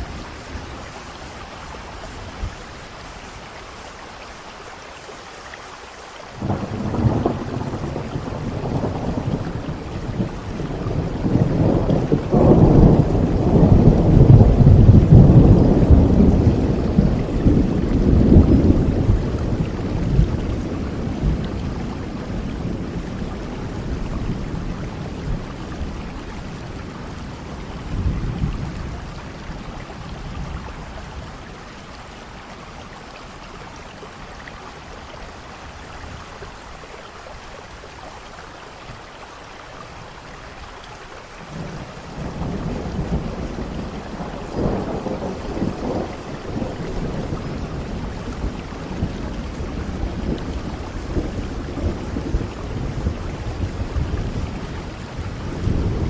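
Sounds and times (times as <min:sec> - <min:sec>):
steady rain: 0:00.0 - 0:56.0
thunder rumbling: 0:06.4 - 0:32.8, 0:41.3 - 0:56.0.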